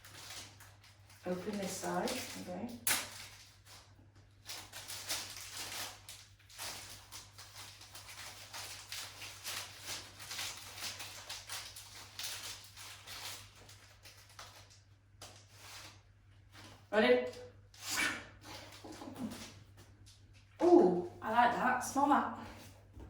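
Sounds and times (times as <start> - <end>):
packaging rustling and crinkling: 0.0 - 16.8.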